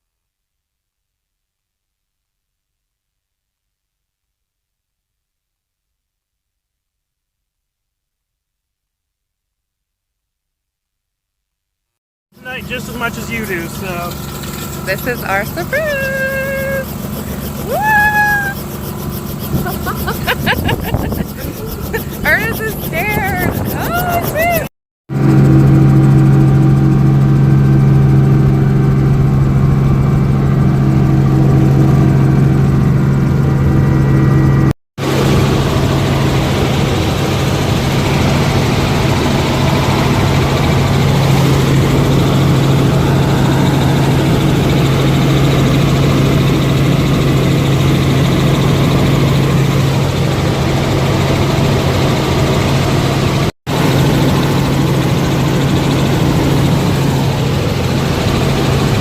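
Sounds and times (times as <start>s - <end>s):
helicopter engine and rotor: 12.4s - 59.0s.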